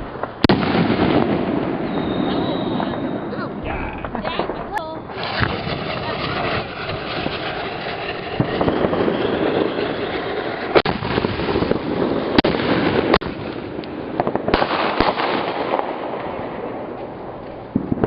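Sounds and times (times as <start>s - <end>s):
fireworks bangs: 0.0s - 18.0s
fireworks crackling: 0.0s - 18.0s.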